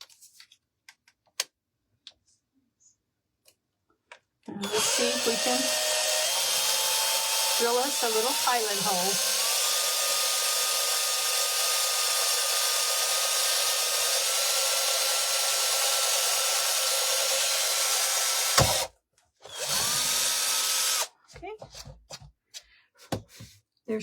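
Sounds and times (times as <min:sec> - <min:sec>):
drill click: 0:04.6 - 0:18.9, 0:19.5 - 0:21.1
power drill whining: 0:04.6 - 0:21.1.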